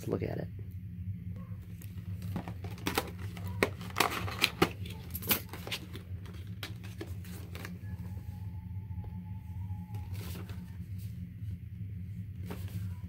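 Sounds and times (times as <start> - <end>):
steady low hum: 0.0 - 13.0
packaging crinkling and clicking: 1.8 - 7.8.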